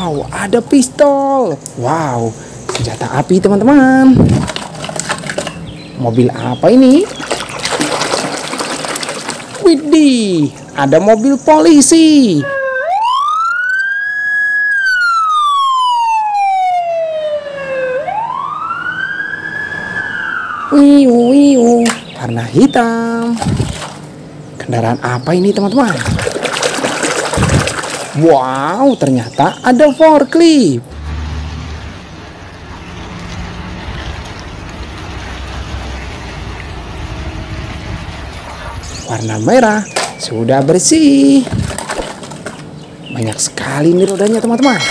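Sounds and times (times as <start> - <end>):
running water rushing: 6.6 - 10.8, 25.6 - 29.4, 41.3 - 44.8
wailing electronic siren: 12.2 - 21.6.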